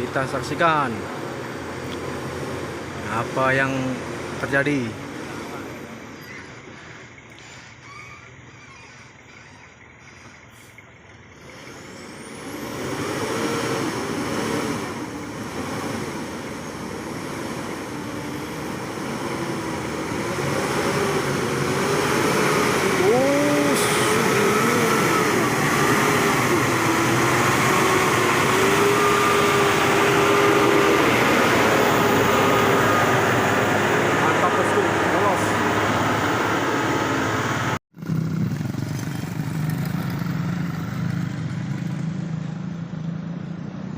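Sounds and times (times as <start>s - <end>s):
truck diesel engine under load: 0.0s - 43.9s.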